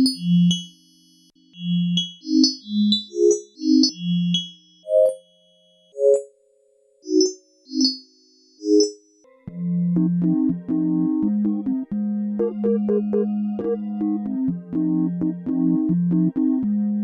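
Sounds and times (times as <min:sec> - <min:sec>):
bell-like synthesizer notes: 0:01.6 - 0:08.0.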